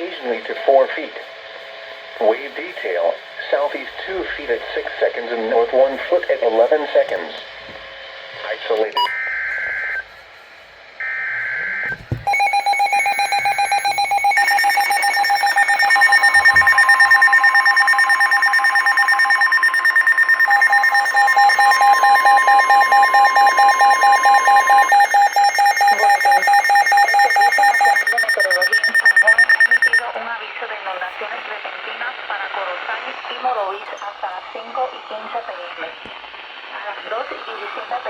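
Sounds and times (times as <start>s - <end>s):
rapid receiver beeps: 9.0s - 9.2s, 12.2s - 30.0s
long steady alert tone: 12.3s - 30.0s
warbling data tones: 12.3s - 30.0s.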